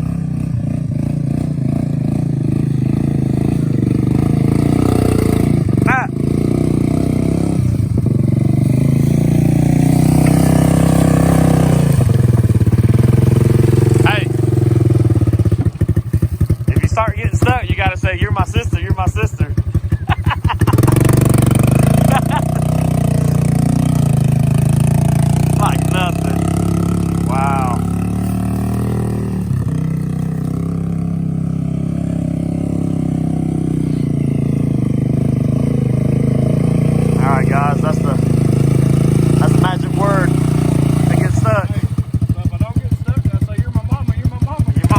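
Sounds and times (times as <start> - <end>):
atv engine revving under load: 0.0 - 44.9.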